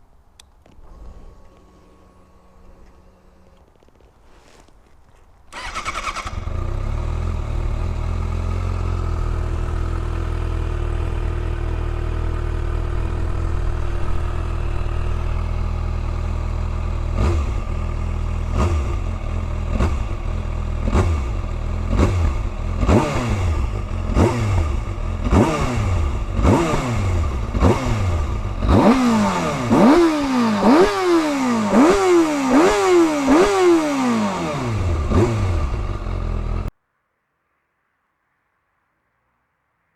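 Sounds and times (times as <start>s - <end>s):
motorcycle engine idling: 5.5s - 33.4s, 34.0s - 36.7s
motorcycle engine revving: 5.5s - 36.7s.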